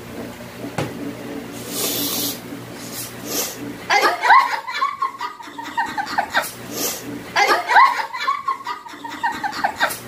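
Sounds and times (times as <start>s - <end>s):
looped high-pitched laughing: 3.9s - 10.0s.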